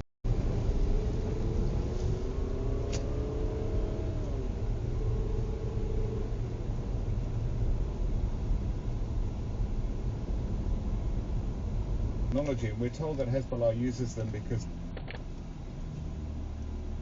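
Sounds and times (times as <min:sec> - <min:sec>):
heavy low rumble: 0:00.2 - 0:17.0.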